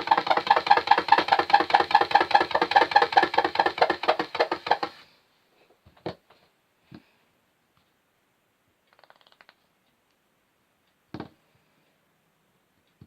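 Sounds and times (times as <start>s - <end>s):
sharp clicks: 8.9s - 10.2s.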